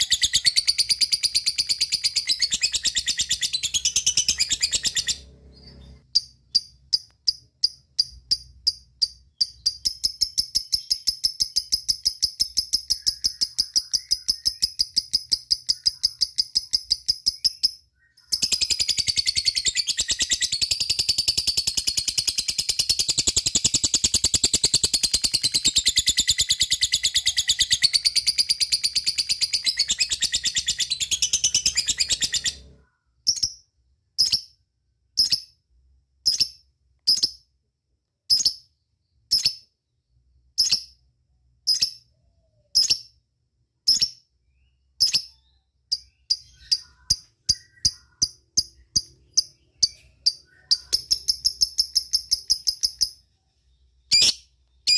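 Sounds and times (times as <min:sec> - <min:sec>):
lovebird chattering trill: 0:00.0 - 0:33.6, 0:45.0 - 0:53.2.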